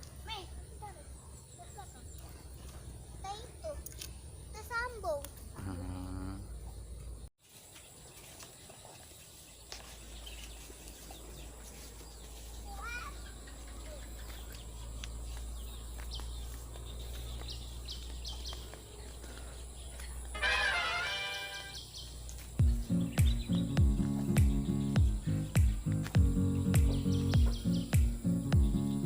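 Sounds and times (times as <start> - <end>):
bird chirps and calls: 8.1 - 20.3, 21.5 - 29.0.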